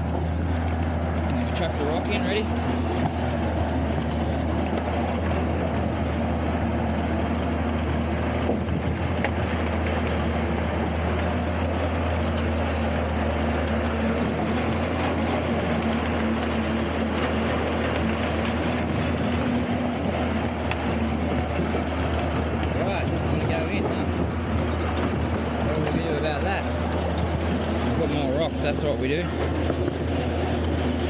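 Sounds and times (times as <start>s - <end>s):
diesel engine humming: 0.0s - 31.0s.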